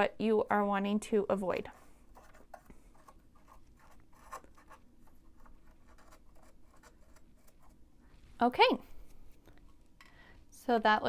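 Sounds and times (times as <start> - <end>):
small brush scratching strokes: 1.4 - 9.8.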